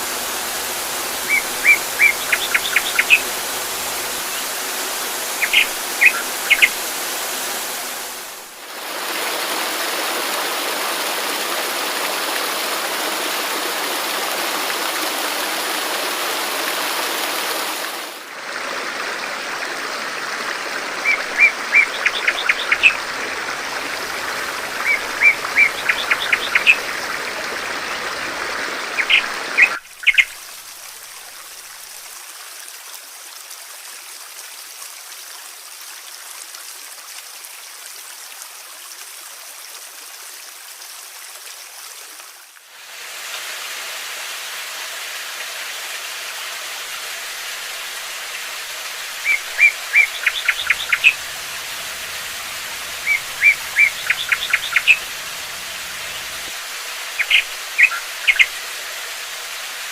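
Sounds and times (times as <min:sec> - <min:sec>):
flowing water: 0:00.0 - 0:59.9
songbirds chirping: 0:00.6 - 0:08.2, 0:21.0 - 0:28.3, 0:49.0 - 0:58.7.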